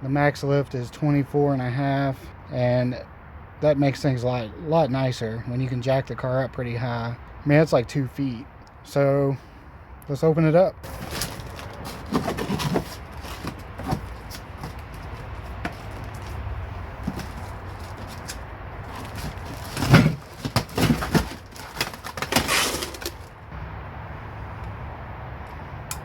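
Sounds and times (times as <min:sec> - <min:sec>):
cardboard box being opened: 0:10.8 - 0:23.3.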